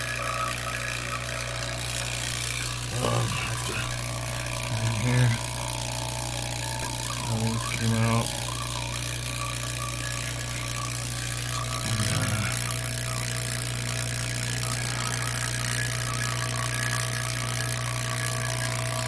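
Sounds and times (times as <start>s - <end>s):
vacuum pump humming and whining: 0.0s - 19.0s.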